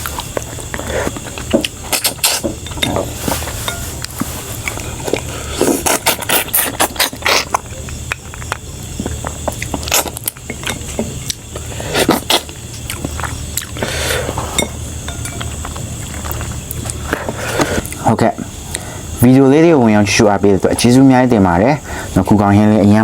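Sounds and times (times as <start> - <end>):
wet chewing: 0.0 - 18.0
steady low hum: 0.0 - 23.0.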